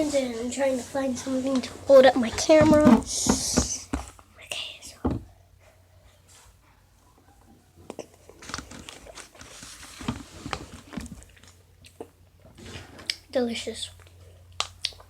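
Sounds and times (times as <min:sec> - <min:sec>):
mouth chewing with wet clicks: 0:11.8 - 0:12.2, 0:14.0 - 0:15.0.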